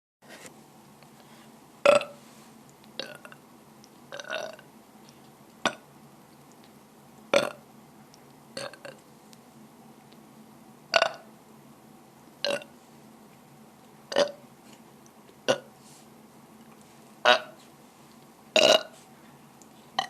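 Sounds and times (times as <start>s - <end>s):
person burping: 1.9s - 2.2s, 3.0s - 3.4s, 4.2s - 4.6s, 7.4s - 7.6s, 8.6s - 9.0s, 11.0s - 11.2s, 12.4s - 12.7s, 14.1s - 14.4s, 15.5s - 15.7s, 17.2s - 17.5s, 18.6s - 19.0s.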